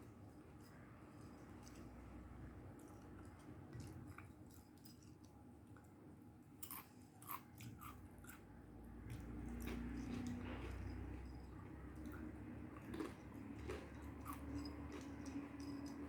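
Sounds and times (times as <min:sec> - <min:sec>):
person chewing food: 0:06.6 - 0:16.0.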